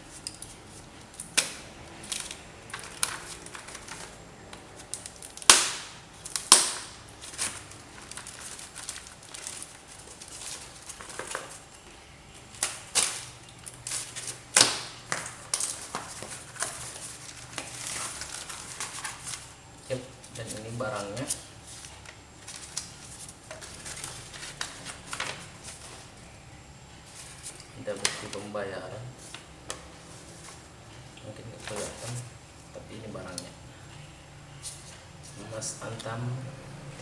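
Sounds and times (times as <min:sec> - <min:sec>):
wrapping crinkling and snapping: 0:00.1 - 0:11.8, 0:12.4 - 0:26.1.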